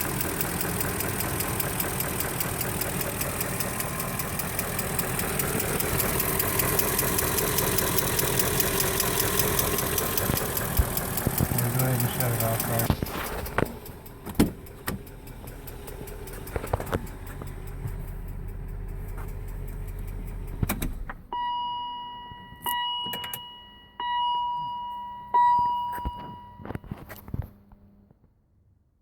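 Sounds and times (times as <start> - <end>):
car engine idling: 0.0 - 27.0
car warning chime: 21.3 - 27.1.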